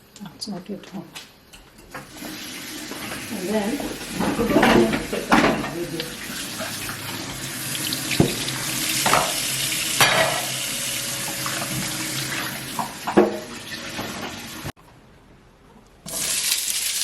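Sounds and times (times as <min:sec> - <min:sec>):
onions sizzling in a pan: 0:02.1 - 0:14.0, 0:16.1 - 0:17.0.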